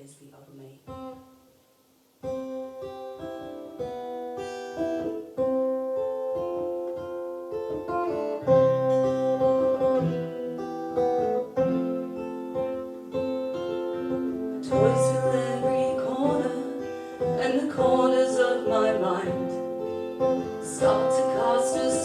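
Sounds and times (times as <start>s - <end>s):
picked acoustic guitar: 0.2s - 22.0s.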